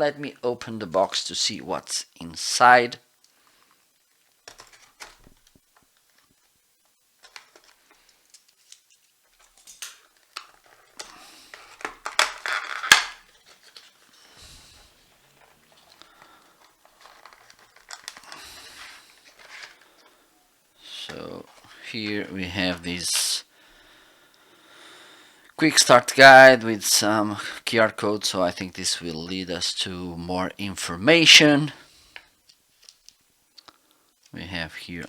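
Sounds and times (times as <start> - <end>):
paper and cardboard rustling: 4.4 - 6.5, 7.2 - 20.2.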